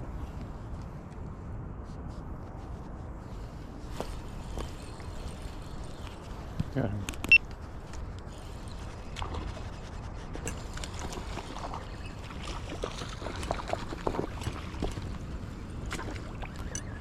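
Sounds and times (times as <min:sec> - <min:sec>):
small water splashes: 0:10.7 - 0:15.2, 0:15.8 - 0:16.8.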